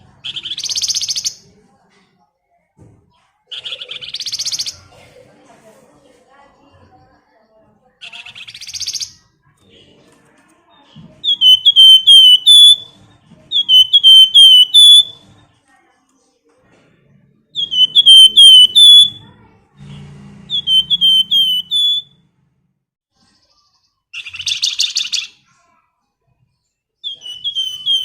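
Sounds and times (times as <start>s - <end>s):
bird singing high whistled notes: 11.2s - 15.2s, 17.6s - 19.2s, 20.5s - 22.2s, 27.0s - 28.0s.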